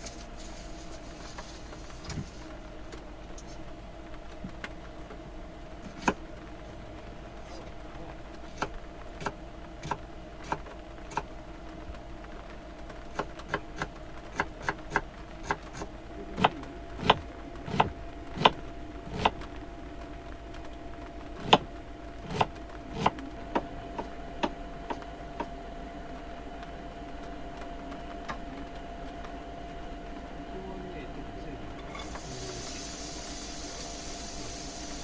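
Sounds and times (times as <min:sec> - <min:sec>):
steady low hum: 0:00.0 - 0:35.0
raindrops dripping on van roof: 0:02.6 - 0:25.6.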